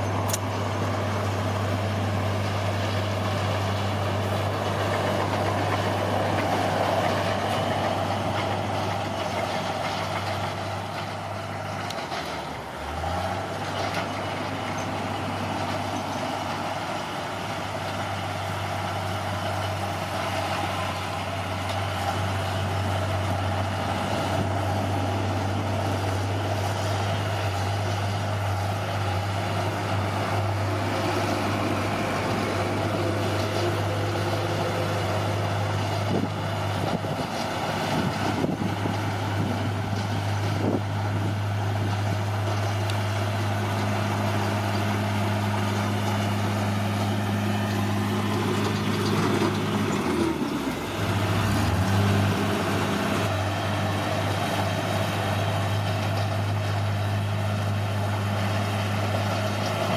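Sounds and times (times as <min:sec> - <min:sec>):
bulldozer diesel engine: 0:00.0 - 0:59.9.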